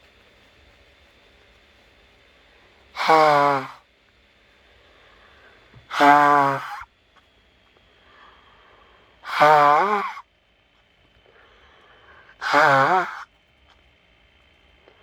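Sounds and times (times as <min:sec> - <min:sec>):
woman blowing her nose: 0:03.0 - 0:03.8, 0:05.9 - 0:06.8, 0:09.3 - 0:10.2, 0:12.4 - 0:13.2.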